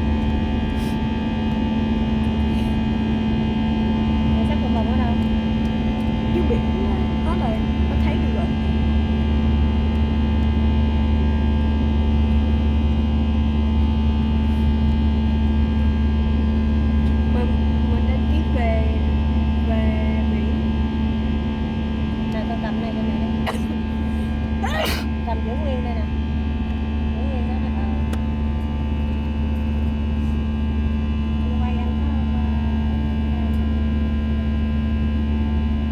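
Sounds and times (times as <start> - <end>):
airliner cabin engine hum: 0.0 - 35.9
sneeze or cough: 23.5 - 23.8, 24.6 - 25.2
faint voices: 23.5 - 25.9.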